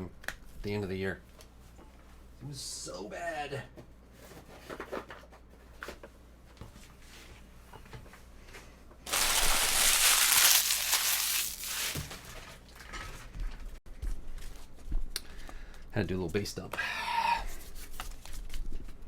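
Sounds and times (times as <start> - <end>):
wrapper tearing and rustling: 9.1 - 12.5.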